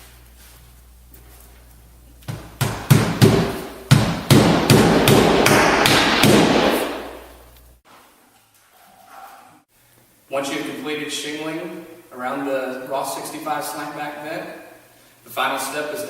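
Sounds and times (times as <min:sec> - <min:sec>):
hammer driving nails: 0:02.6 - 0:07.0.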